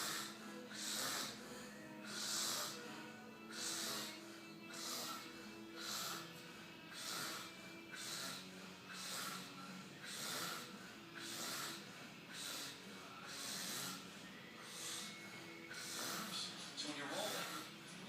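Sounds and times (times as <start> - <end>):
man snoring: 0.0 - 17.8.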